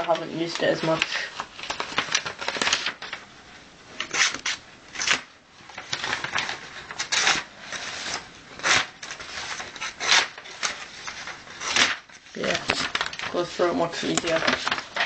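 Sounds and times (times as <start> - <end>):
knife blade rasping through material: 9.8 - 10.3.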